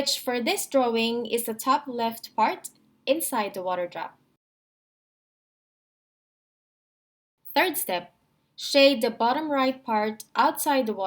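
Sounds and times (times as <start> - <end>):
woman narrating: 0.0 - 4.2, 7.5 - 11.0.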